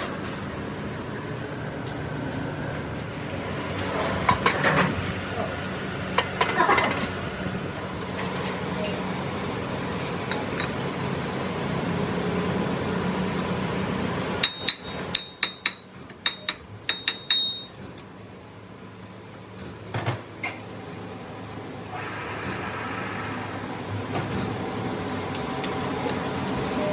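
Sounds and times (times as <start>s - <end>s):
sharp metallic clinks: 14.4s - 17.7s
steady hum: 21.5s - 26.9s.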